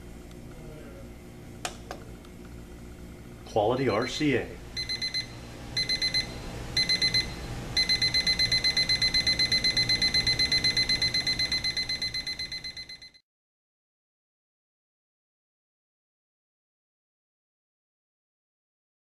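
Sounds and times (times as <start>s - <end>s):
alarm clock beeping: 4.8s - 13.2s.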